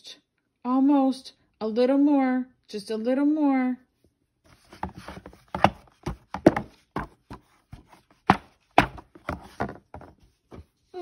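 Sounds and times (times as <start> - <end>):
book being shaken and bumped: 4.5 - 10.8.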